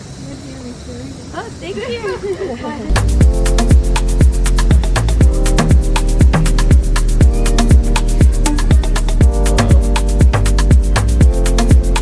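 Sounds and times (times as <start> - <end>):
electronic dance music: 2.9 - 12.0.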